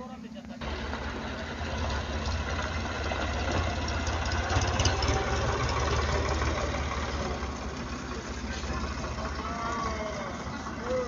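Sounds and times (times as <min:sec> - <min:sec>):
engine running with low pulsing: 0:00.2 - 0:11.0.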